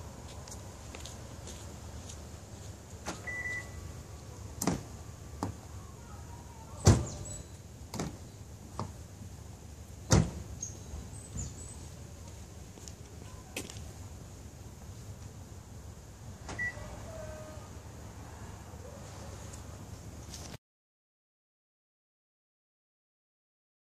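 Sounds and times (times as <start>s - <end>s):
car body clunks and knocks: 4.6s - 5.6s, 7.9s - 9.0s, 10.1s - 10.5s.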